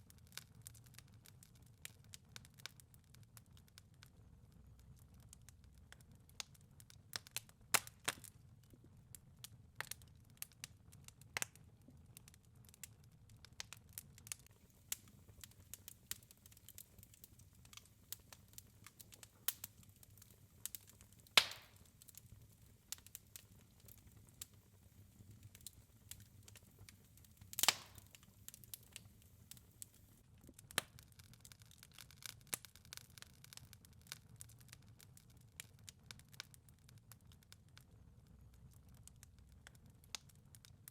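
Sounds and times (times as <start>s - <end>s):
wood fire crackling: 0.0s - 40.9s
loud fire pops: 14.4s - 30.0s.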